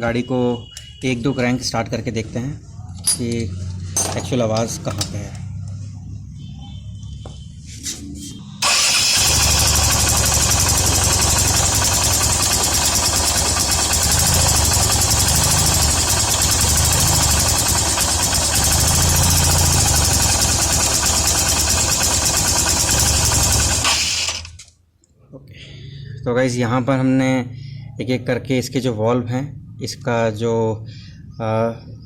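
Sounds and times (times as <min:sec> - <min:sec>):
motorcycle engine running: 0:08.6 - 0:24.6.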